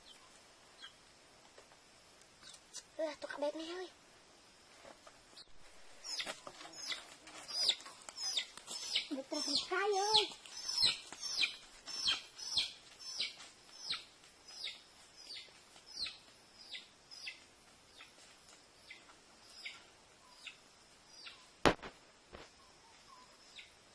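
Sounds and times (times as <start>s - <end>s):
small bird chirping: 0.0s - 1.0s, 5.3s - 21.6s, 22.5s - 23.9s.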